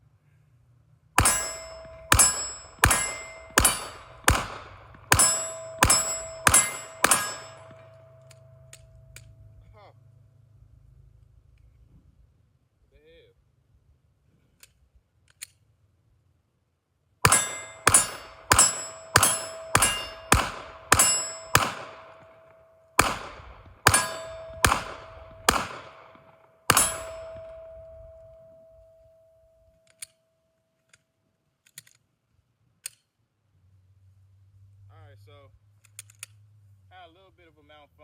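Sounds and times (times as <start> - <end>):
pistol shots: 1.2 - 8.2, 17.2 - 28.4
steel target ringing: 1.2 - 9.2, 17.2 - 29.7.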